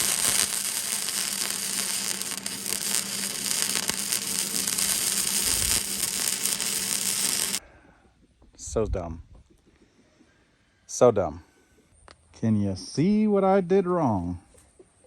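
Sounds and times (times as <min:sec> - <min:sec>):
welder arc crackling: 0:00.0 - 0:07.6.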